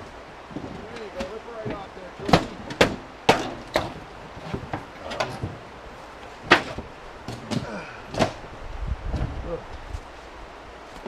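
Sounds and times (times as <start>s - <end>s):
demolition knocks and bangs: 0.5s - 5.6s.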